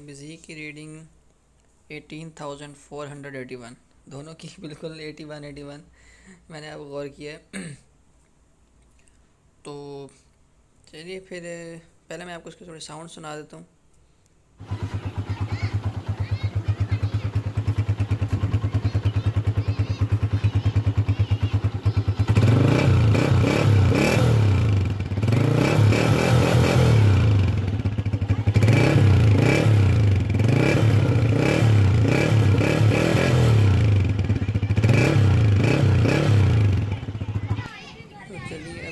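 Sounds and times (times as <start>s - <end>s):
motorcycle engine idling and revving: 14.6s - 37.8s.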